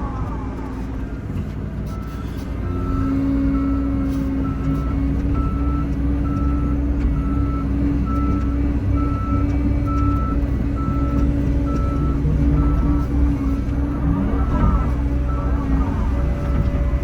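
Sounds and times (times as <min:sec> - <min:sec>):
diesel engine running: 0:00.0 - 0:17.0
backup alarm beeping: 0:09.0 - 0:17.0.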